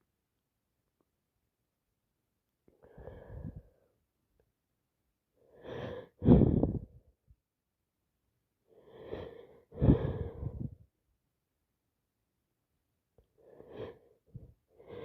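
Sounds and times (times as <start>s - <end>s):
short in-breath: 2.8s - 3.9s, 5.6s - 7.0s, 8.9s - 10.8s.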